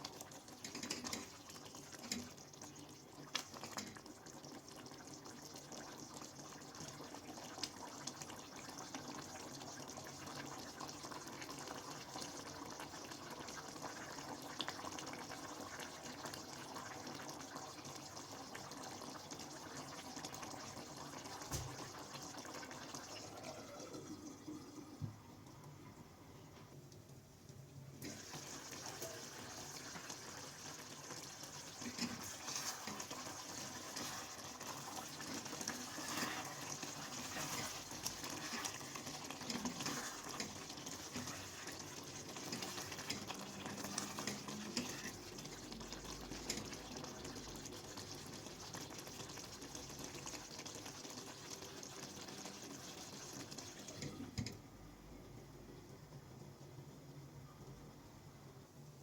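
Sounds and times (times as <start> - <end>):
water running from tap: 28.0 - 54.5.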